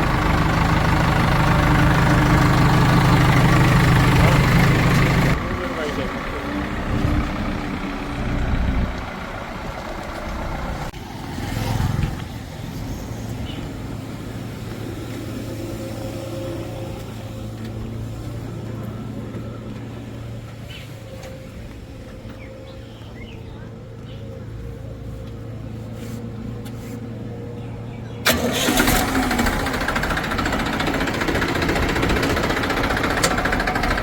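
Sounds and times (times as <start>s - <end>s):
heavy diesel engine running: 0.0s - 11.2s, 27.6s - 34.0s.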